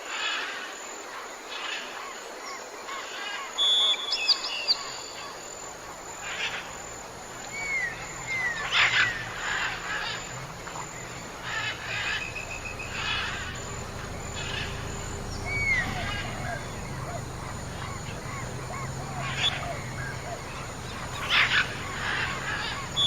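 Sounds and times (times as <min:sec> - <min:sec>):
birds chirping and singing: 0:03.6 - 0:23.0
low steady hum: 0:05.4 - 0:23.0.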